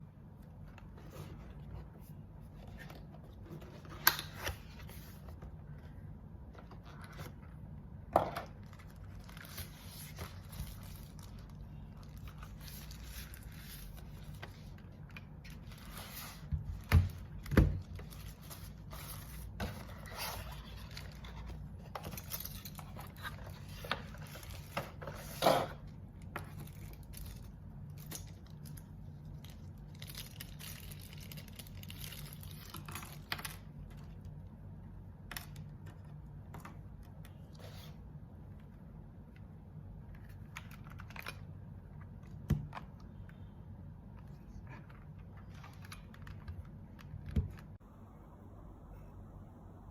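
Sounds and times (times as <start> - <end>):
packaging rustling and scraping: 8.4 - 28.5.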